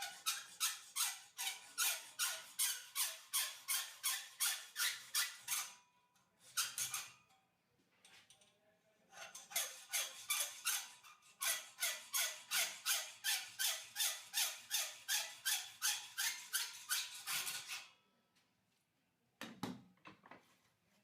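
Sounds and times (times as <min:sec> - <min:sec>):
hacksaw cutting steel: 0:00.0 - 0:05.8, 0:09.2 - 0:17.9.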